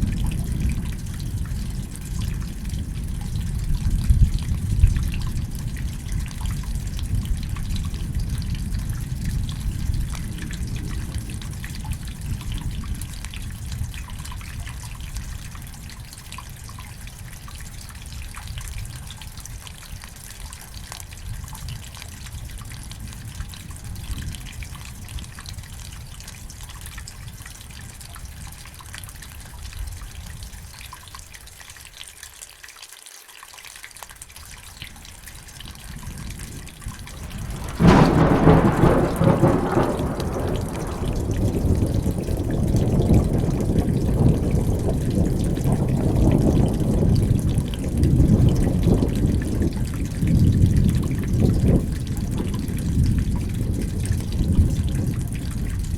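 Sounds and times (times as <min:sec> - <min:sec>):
rumbling thunder: 0:00.0 - 0:14.0, 0:36.1 - 0:55.9
steady rain: 0:00.0 - 0:55.9
loud thunderclap: 0:36.8 - 0:55.9.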